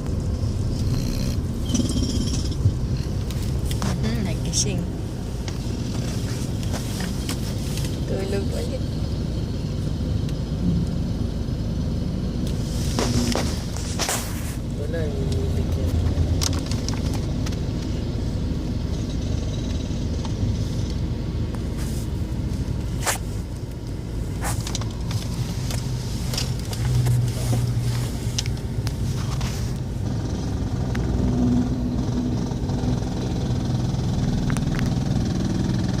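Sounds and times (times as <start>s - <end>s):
steady low rumble: 0.0s - 36.0s
slow low snoring: 0.7s - 2.6s.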